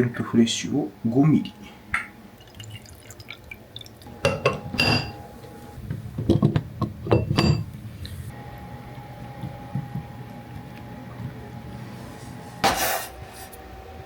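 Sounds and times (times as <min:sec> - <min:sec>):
liquid pouring and dripping: 0:02.4 - 0:04.1
glass and dishware clinking: 0:04.2 - 0:05.3, 0:06.3 - 0:07.7.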